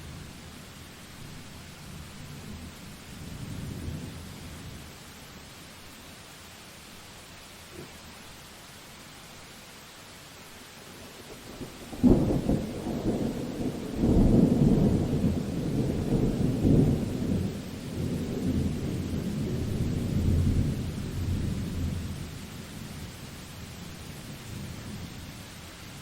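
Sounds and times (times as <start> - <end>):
steady rain: 0.0 - 26.0
thunder rumbling: 11.5 - 22.2.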